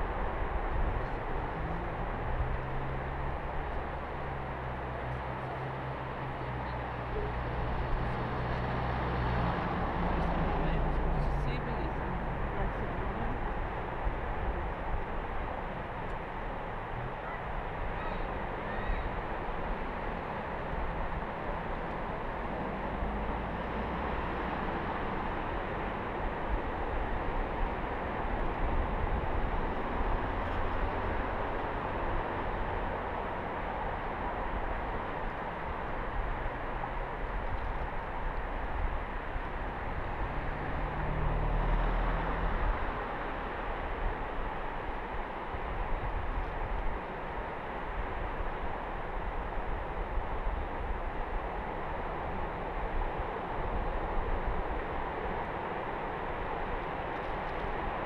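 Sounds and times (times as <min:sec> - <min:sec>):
wind: 0:00.0 - 0:58.0.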